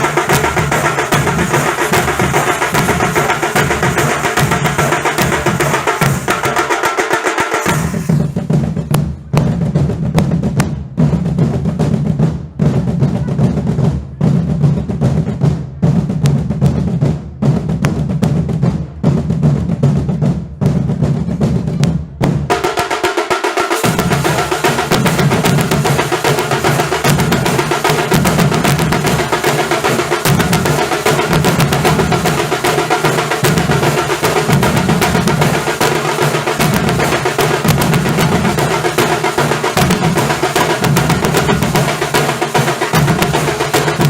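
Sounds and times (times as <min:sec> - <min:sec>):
cymbals: 0:00.0 - 0:09.0, 0:21.7 - 0:44.0
dhol drums beating: 0:00.0 - 0:44.0
snare drum rolls: 0:00.0 - 0:44.0.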